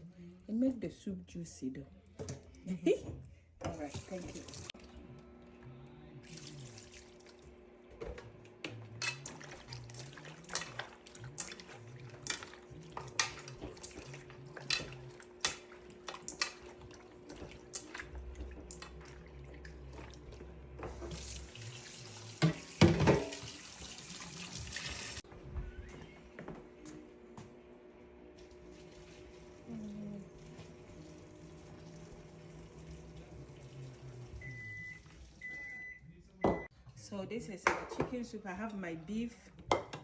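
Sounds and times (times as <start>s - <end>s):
tap water running into sink: 3.7s - 4.8s, 6.3s - 25.2s, 28.4s - 35.6s
chicken and utensils clattering: 8.9s - 19.2s, 22.4s - 23.7s.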